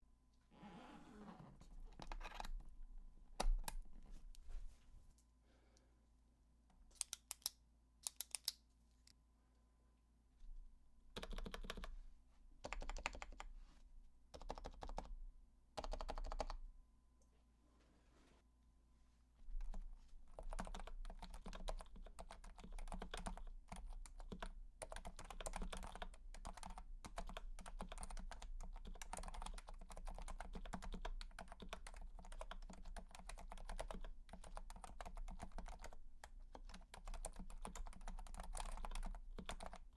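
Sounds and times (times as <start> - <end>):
keyboard typing: 11.2 - 11.9, 12.6 - 13.5, 14.4 - 15.1, 15.8 - 16.6, 19.7 - 39.9.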